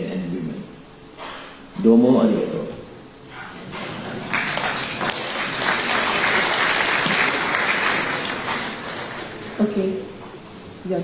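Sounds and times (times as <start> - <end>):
audience applauding: 3.6 - 9.9.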